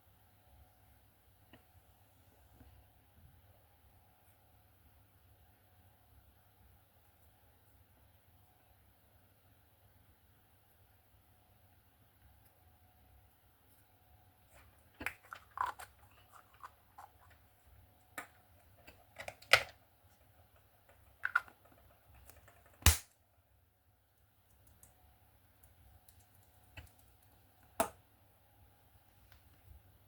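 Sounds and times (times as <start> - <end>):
sharp loud snaps: 22.8 - 23.2.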